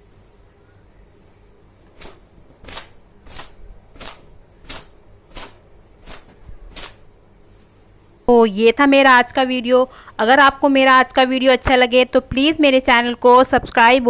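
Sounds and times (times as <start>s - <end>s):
wet hair swishing: 2.0s - 7.0s.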